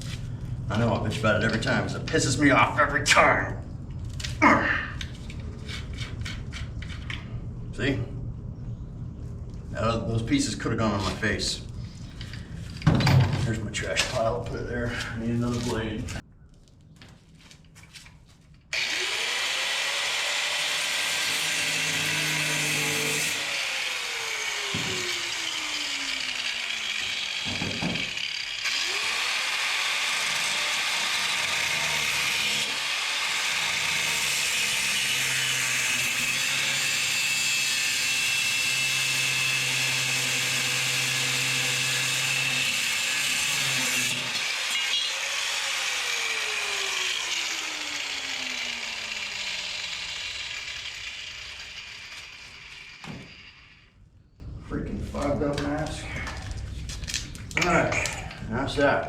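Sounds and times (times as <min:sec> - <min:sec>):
abrasive cut-off wheel grinding metal: 0:18.8 - 0:54.0.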